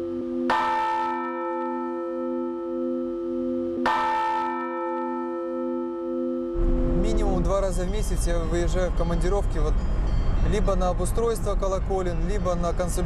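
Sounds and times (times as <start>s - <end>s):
large church bell ringing: 0.0s - 11.8s
low pulsing hum: 6.6s - 13.0s.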